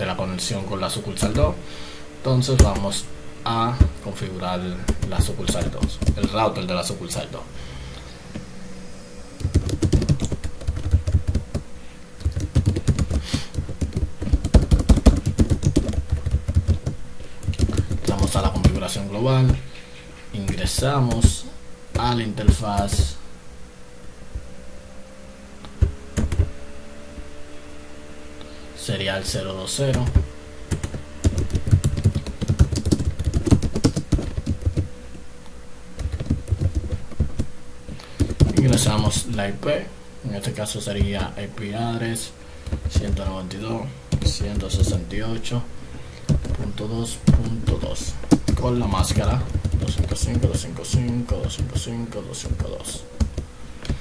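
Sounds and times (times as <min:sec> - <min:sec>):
faint steady hum: 0:00.0 - 0:54.0
computer keyboard typing: 0:04.7 - 0:06.5, 0:09.4 - 0:11.6, 0:12.2 - 0:19.6, 0:20.4 - 0:21.3, 0:25.8 - 0:26.5, 0:29.9 - 0:34.9, 0:36.0 - 0:37.5, 0:38.1 - 0:39.4, 0:42.6 - 0:43.5, 0:44.1 - 0:45.1, 0:46.3 - 0:54.0.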